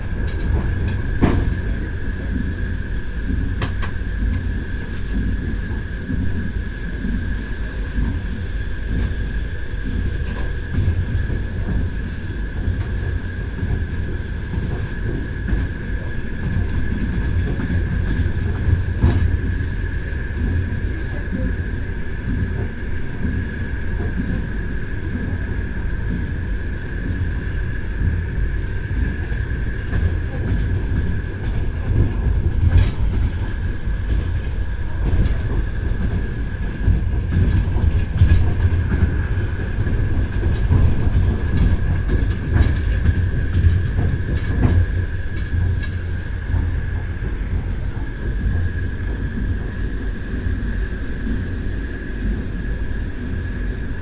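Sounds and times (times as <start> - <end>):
train wheels knocking on rails: 0.0 - 54.0.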